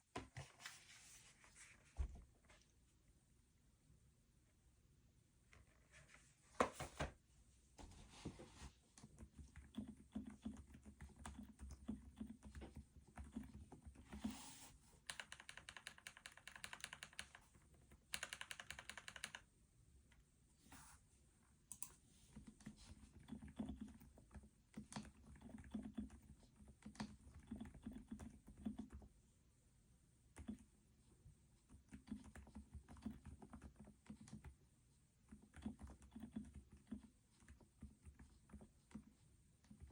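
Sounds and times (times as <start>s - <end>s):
soft muffled keyboard keystrokes: 8.9s - 19.5s, 30.3s - 30.7s, 35.3s - 39.9s.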